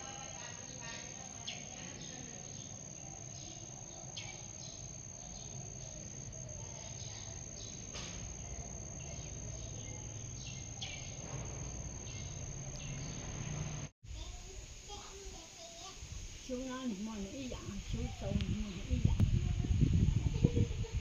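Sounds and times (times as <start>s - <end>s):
short insect chirps: 0.0s - 13.9s
insects trilling: 0.0s - 21.0s.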